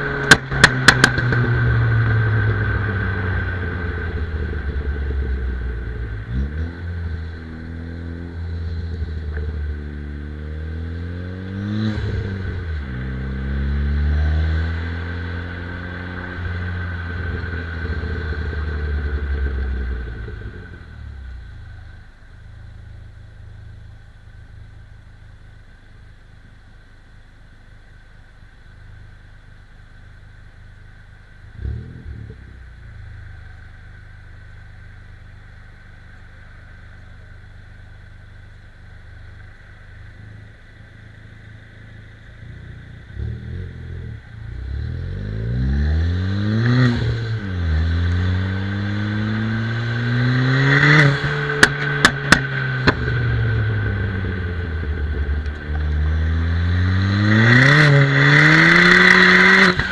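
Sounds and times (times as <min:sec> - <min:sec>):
car engine revving: 0:00.0 - 0:26.0, 0:28.7 - 0:59.9
exhaust pops and bangs: 0:00.1 - 0:02.9, 0:50.8 - 0:56.2.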